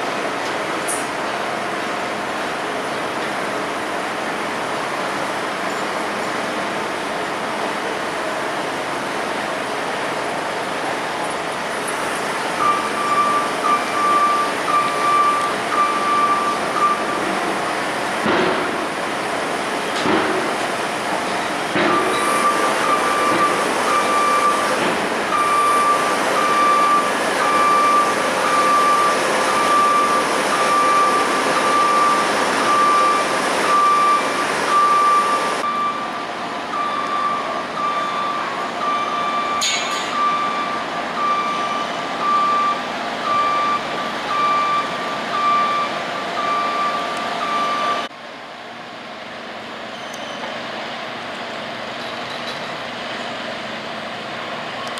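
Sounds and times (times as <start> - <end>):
heavy machinery noise: 0.0 - 48.2
backup alarm beeping: 12.6 - 17.4, 21.8 - 48.1.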